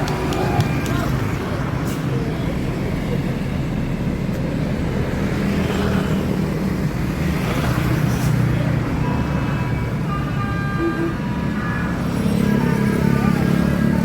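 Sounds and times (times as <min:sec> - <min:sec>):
bus diesel engine rumbling: 0:00.0 - 0:07.3, 0:08.0 - 0:14.0
faint melodic bus horn: 0:09.0 - 0:13.9.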